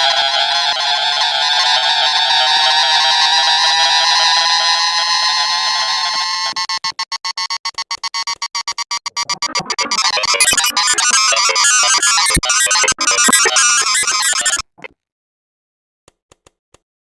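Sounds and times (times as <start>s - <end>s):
electronic synthesizer music: 9.0s - 14.9s.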